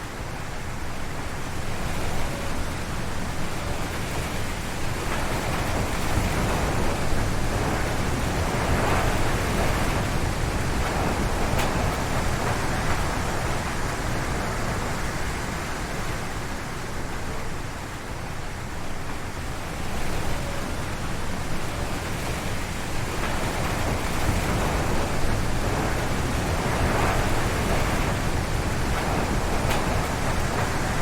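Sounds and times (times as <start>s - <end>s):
strong wind rushing through trees: 0.0s - 31.0s.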